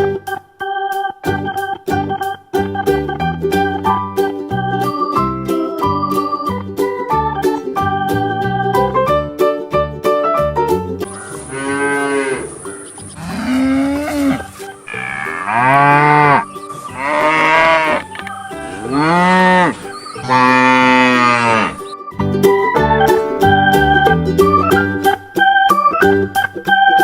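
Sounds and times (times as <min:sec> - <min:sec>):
organ music: 0:00.0 - 0:27.0
cow mooing: 0:11.4 - 0:12.5, 0:13.2 - 0:21.8.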